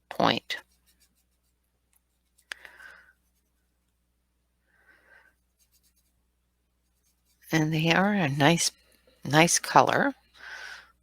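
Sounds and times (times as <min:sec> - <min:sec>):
pencil scratching on paper: 0:00.5 - 0:02.4, 0:05.3 - 0:06.2, 0:06.8 - 0:08.1.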